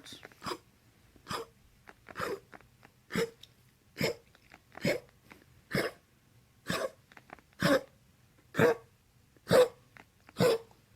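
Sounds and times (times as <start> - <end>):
dog coughing: 0.4 - 0.6, 1.2 - 2.5, 3.1 - 3.4, 4.0 - 4.2, 4.8 - 5.1, 5.7 - 6.0, 6.6 - 7.0, 7.6 - 7.9, 8.6 - 8.8, 10.4 - 10.7.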